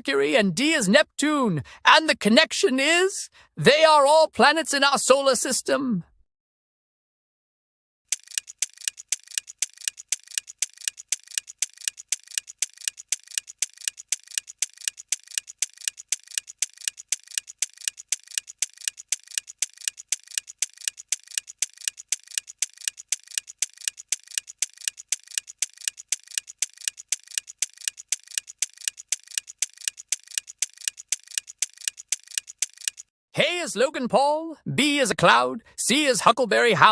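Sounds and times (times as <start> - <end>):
clock ticking: 8.1 - 33.1.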